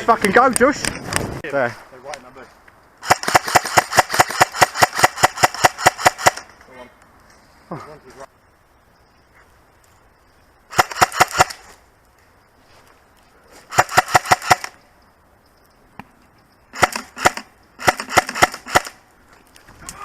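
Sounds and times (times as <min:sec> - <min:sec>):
airsoft guns firing bursts: 0:03.0 - 0:06.4, 0:10.7 - 0:11.6, 0:13.7 - 0:14.8, 0:16.7 - 0:19.0.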